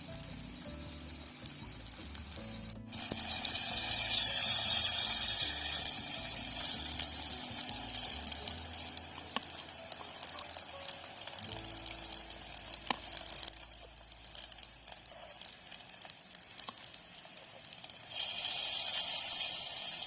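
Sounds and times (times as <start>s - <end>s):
quiet background music: 0.0s - 20.0s
loud rushing hiss of water: 18.0s - 20.0s.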